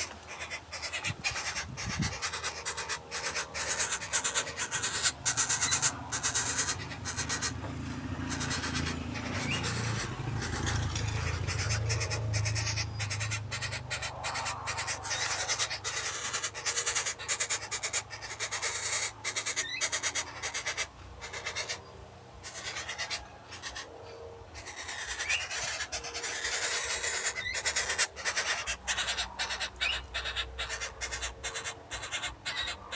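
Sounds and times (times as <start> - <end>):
bird low hoots: 0.0 - 32.9.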